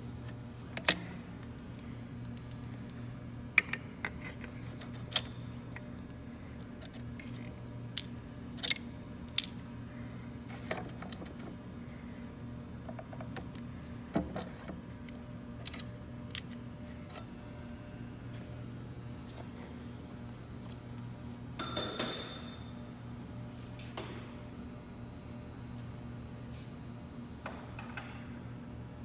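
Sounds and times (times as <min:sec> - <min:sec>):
steady low hum: 0:00.0 - 0:21.6.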